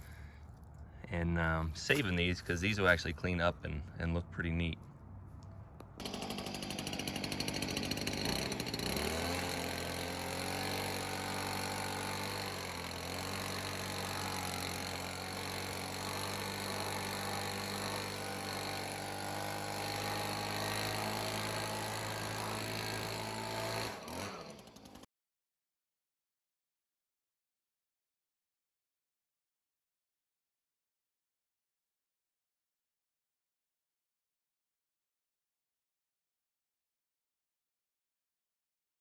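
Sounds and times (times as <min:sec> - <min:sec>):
band sawmill cutting log: 0:06.0 - 0:25.1.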